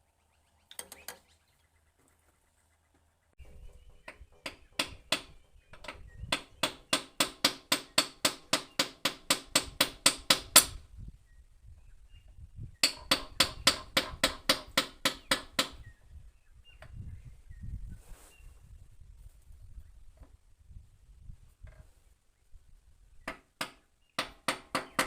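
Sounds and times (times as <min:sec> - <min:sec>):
rapid hammer blows on metal: 0:03.4 - 0:10.8, 0:12.8 - 0:15.8.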